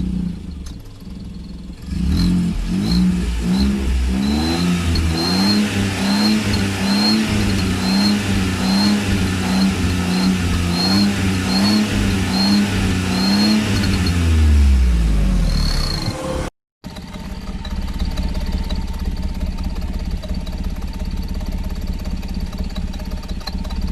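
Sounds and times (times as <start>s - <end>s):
car engine revving: 0.0s - 19.2s
turbo whistle: 15.4s - 16.5s.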